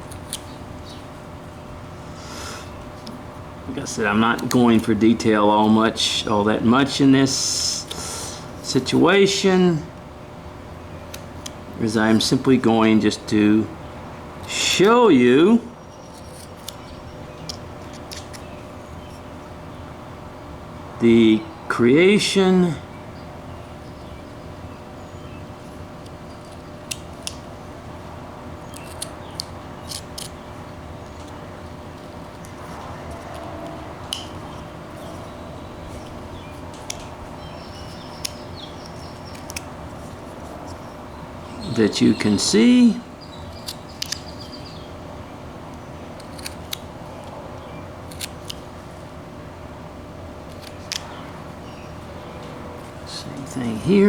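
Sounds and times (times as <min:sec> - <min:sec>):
carving knife cutting wood: 0:00.0 - 0:01.0, 0:16.0 - 0:19.2, 0:28.6 - 0:40.9, 0:43.2 - 0:44.8, 0:46.1 - 0:47.3, 0:48.0 - 0:49.0, 0:50.4 - 0:51.2
steady low hum: 0:00.0 - 0:54.0.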